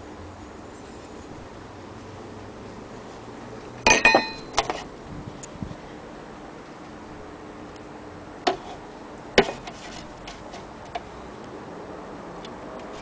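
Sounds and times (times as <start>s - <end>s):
sharp metallic clink: 3.8s - 4.6s.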